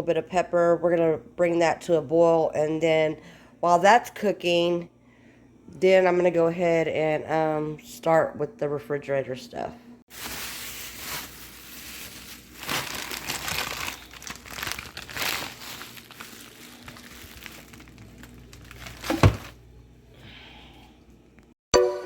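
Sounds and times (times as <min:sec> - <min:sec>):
plastic packaging crinkling: 0:10.1 - 0:19.7.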